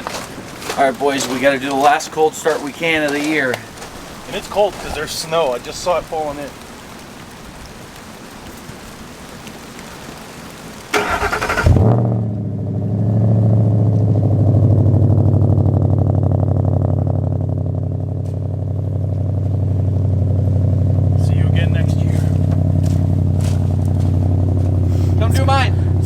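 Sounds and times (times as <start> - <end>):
rain hiss: 0.3 - 12.9, 18.0 - 26.0
car engine starter cranking: 11.0 - 12.0
car engine idling: 11.0 - 26.0.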